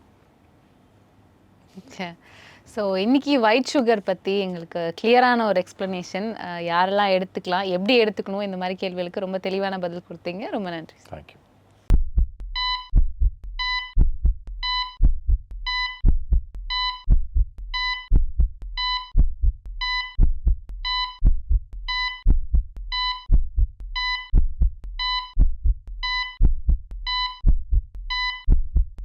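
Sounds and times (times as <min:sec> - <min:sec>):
heartbeat double thump: 0:11.9 - 0:29.0
short electronic beep: 0:12.6 - 0:12.9, 0:13.6 - 0:14.0, 0:14.6 - 0:15.0, 0:15.7 - 0:16.0, 0:16.7 - 0:17.0, 0:22.9 - 0:23.3, 0:25.0 - 0:25.4, 0:26.0 - 0:26.4, 0:28.1 - 0:28.5.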